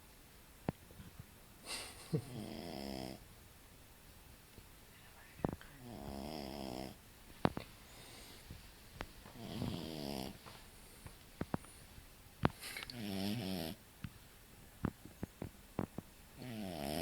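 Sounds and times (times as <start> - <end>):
dog snoring: 2.2 - 3.2, 5.8 - 7.0, 9.3 - 10.4, 12.9 - 13.8, 16.4 - 17.0.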